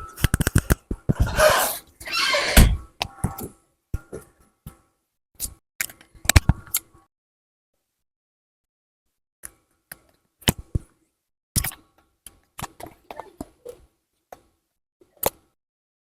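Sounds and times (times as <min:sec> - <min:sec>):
clicks and taps of small parts: 0:00.2 - 0:01.0.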